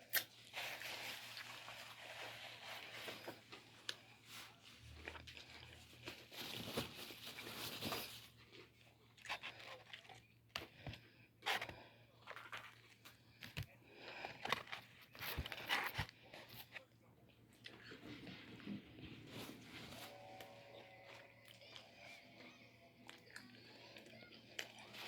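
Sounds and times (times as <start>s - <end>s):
person chewing: 4.8s - 6.2s, 8.5s - 16.9s, 20.1s - 25.0s.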